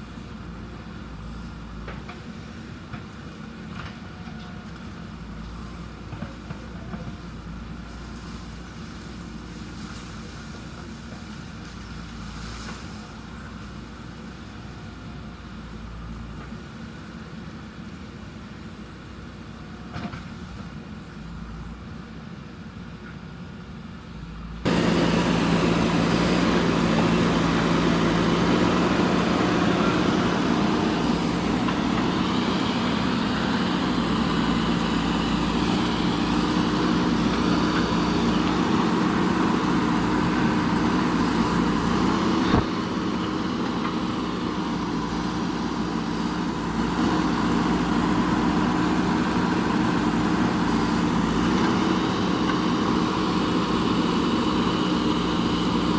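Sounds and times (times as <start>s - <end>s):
diesel engine running under load: 0.0s - 55.9s.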